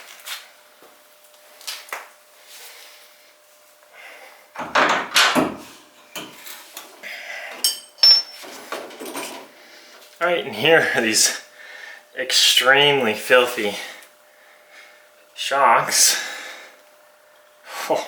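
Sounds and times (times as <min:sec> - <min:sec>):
sharp metallic clinks: 0:07.6 - 0:08.4.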